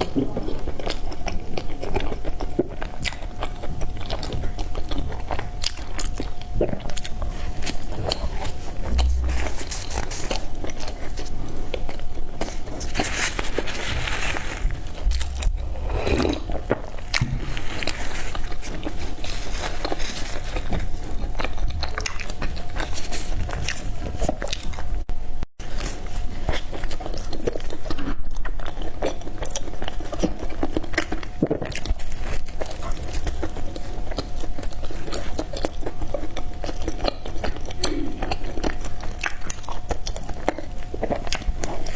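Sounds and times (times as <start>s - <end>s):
mouth chewing: 0.0s - 13.7s, 14.7s - 24.9s, 25.8s - 41.9s
biting into bread: 14.7s - 24.9s.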